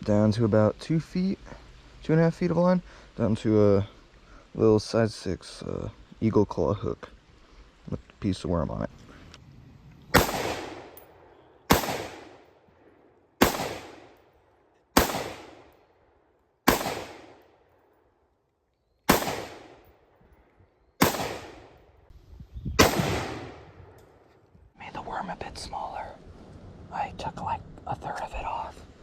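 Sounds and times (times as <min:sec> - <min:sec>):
sharp bangs: 0:10.1 - 0:12.6, 0:13.4 - 0:14.2, 0:15.0 - 0:15.8, 0:16.6 - 0:17.6, 0:19.1 - 0:20.0, 0:21.0 - 0:21.9, 0:22.8 - 0:24.1.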